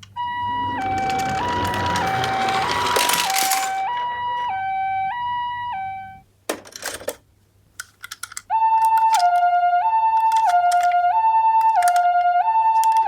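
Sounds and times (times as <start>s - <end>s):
plastic clicks and rattles: 0.0s - 3.8s, 6.5s - 13.0s
toy electronic two-tone siren: 0.0s - 6.2s, 8.5s - 13.0s.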